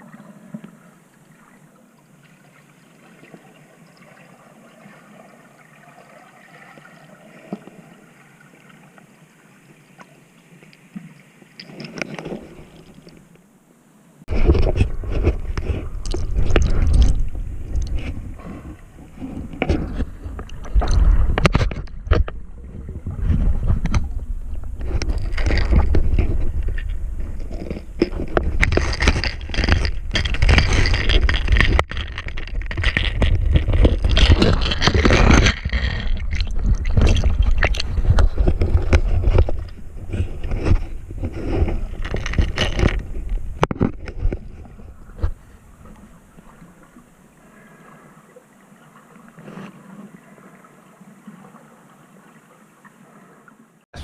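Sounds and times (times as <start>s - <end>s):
water splashing and sloshing: 0.0s - 13.6s, 14.3s - 54.0s
knocks and scrapes: 11.6s - 13.2s, 14.3s - 46.9s, 49.4s - 49.8s
heavy low rumble: 14.4s - 21.5s, 22.2s - 39.0s.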